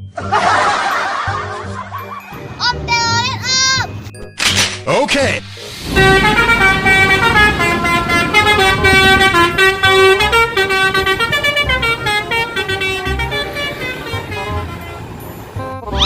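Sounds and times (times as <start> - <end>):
pitched air horns playing tune: 5.6 - 15.8.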